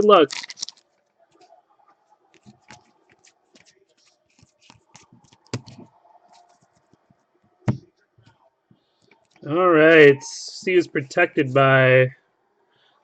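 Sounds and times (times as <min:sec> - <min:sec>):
cards crinkling and rustling: 0:00.1 - 0:01.5, 0:02.3 - 0:07.0.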